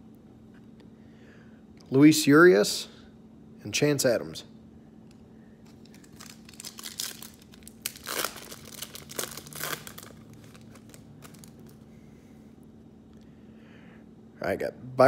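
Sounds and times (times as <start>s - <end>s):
wrapper crinkling and tearing: 5.8s - 11.8s.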